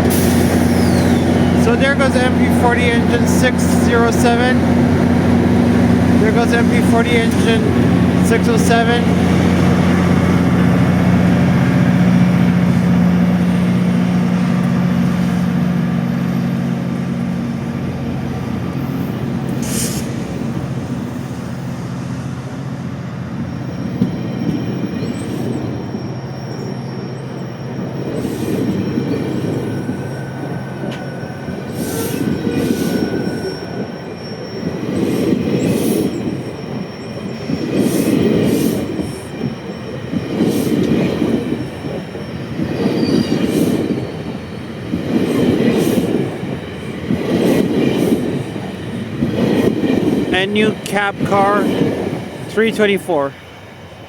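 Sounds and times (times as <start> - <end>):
high wheel squeal: 0.0 - 11.8, 23.2 - 51.8
diesel locomotive engine drone: 0.0 - 54.0
train coaches rumbling past: 0.0 - 54.0.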